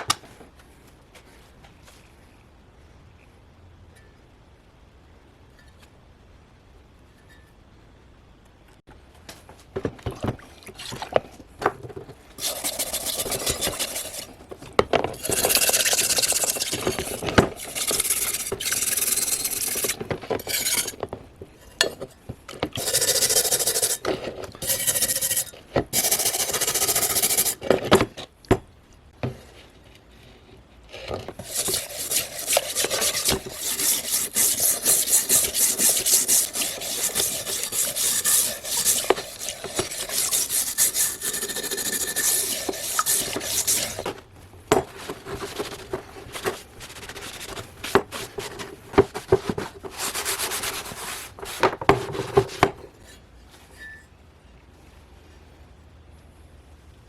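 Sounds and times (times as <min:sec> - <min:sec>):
abrasive scraping steel cleaver: 0:31.4 - 0:44.2.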